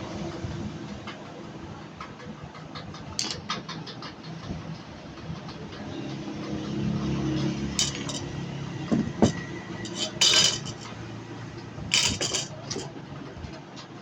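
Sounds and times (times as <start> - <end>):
metal tools clinking and clattering: 3.2 - 3.4, 7.8 - 11.2, 11.9 - 12.9.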